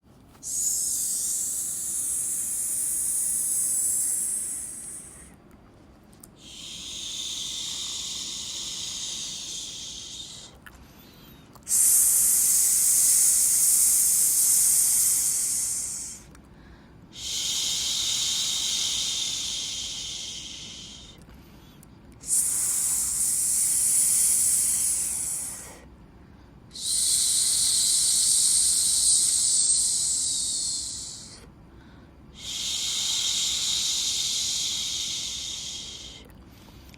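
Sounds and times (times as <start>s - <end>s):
person shushing: 0.4s - 5.3s.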